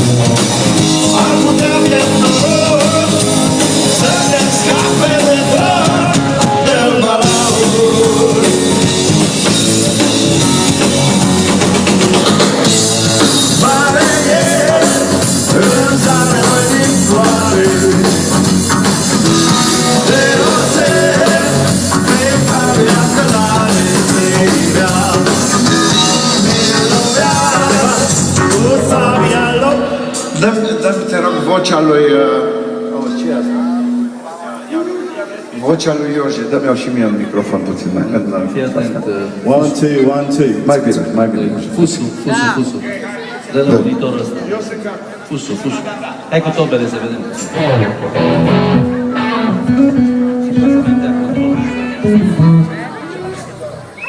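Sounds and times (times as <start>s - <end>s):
rock band playing live: 0.0s - 35.6s, 47.2s - 54.0s
person singing: 0.8s - 10.0s, 13.4s - 18.6s, 19.2s - 30.4s.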